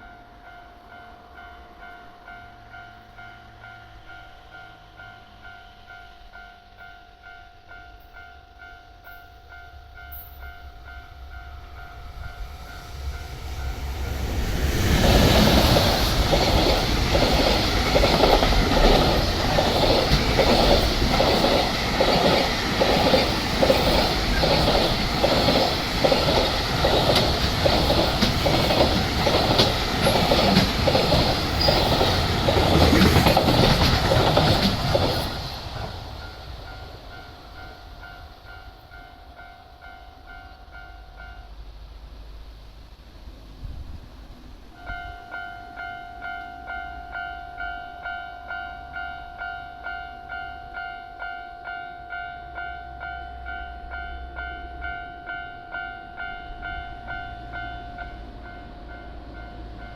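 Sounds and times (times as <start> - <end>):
level-crossing warning bell clanging: 0.0 - 41.7, 44.8 - 59.9
freight train wheels clattering: 12.1 - 38.4.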